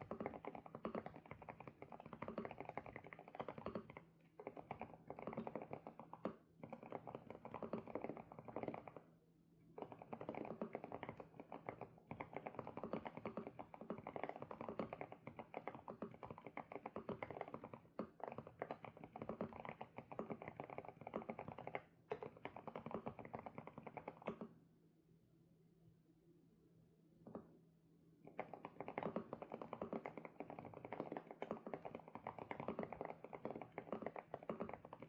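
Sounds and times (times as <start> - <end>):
mechanical keyboard typing: 9.8 - 24.4.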